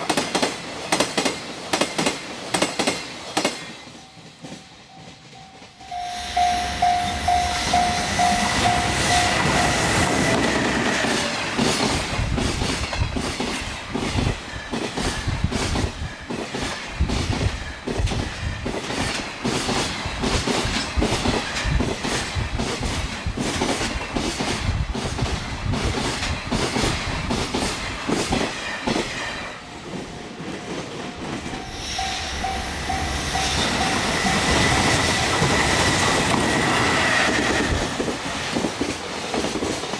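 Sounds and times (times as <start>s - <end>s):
train wheels clacking over rail joints: 0.0s - 39.9s
level crossing warning bell: 3.8s - 11.6s, 30.6s - 37.4s.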